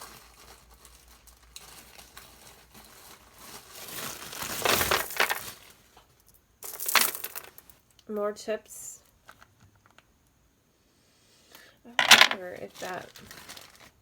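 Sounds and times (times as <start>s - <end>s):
plastic bag crinkling: 0.0s - 5.9s, 12.0s - 14.0s.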